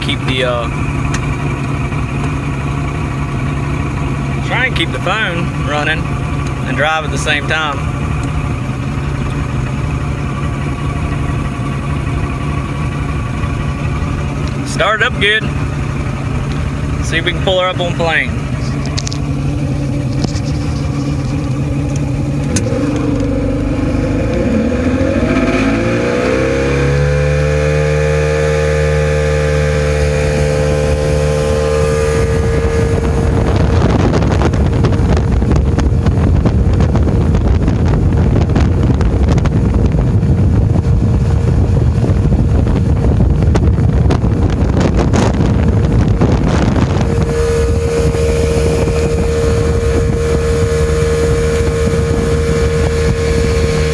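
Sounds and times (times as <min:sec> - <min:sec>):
outboard motor revving: 0:00.0 - 0:53.9
rush of wind and water: 0:00.0 - 0:53.9.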